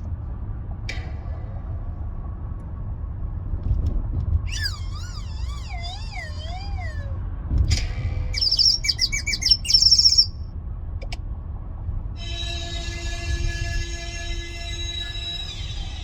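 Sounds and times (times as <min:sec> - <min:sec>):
quick high chirps: 0:04.5 - 0:07.2, 0:08.4 - 0:10.4
wobbling downward sliding tone: 0:04.5 - 0:07.3.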